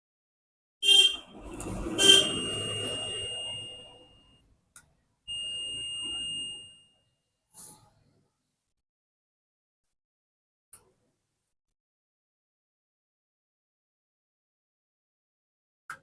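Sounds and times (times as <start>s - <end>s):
multimeter buzzer beeping: 2.0s - 4.4s, 5.3s - 6.9s.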